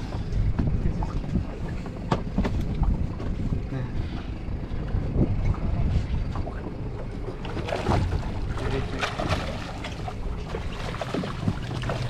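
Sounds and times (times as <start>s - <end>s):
boat engine low rumble: 0.0s - 12.0s
water: 0.0s - 12.0s
wind: 0.0s - 12.0s.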